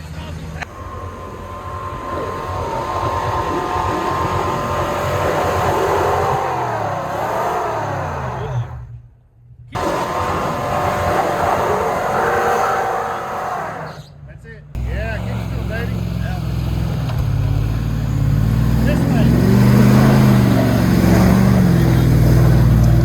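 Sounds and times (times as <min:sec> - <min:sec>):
engine revving hard: 0:00.0 - 0:08.9, 0:09.8 - 0:14.2, 0:14.8 - 0:23.0.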